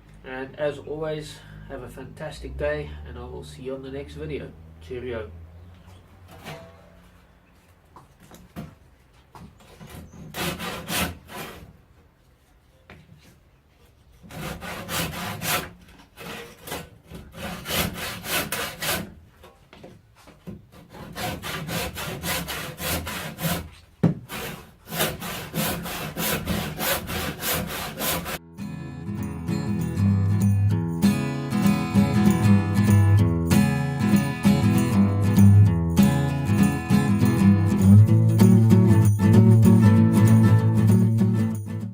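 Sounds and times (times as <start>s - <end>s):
hand saw cutting log: 9.7s - 11.8s, 14.2s - 19.6s, 20.7s - 28.4s.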